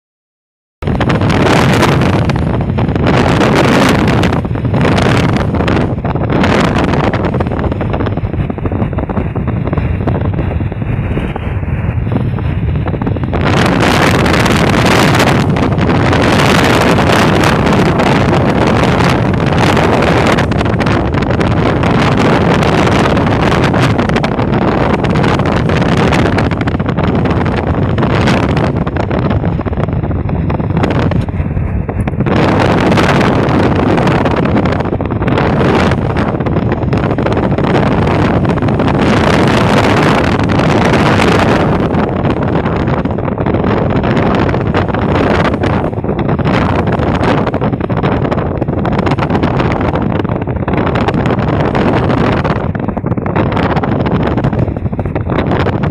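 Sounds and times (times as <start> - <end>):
low bus rumble: 0.8 - 55.9
road and wind noise: 0.8 - 55.9
wind buffeting microphone: 0.8 - 55.9.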